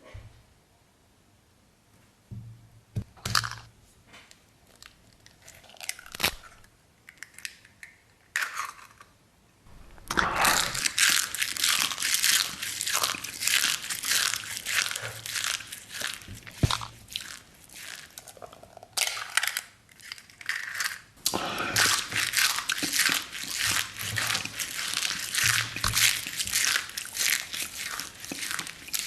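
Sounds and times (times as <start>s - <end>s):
crunching and chewing: 4.6s - 7.6s, 9.8s - 29.0s.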